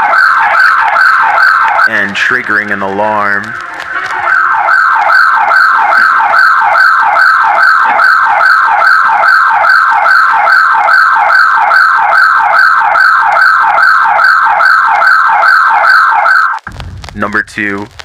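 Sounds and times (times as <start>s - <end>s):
alarm siren wailing: 0.0s - 16.7s.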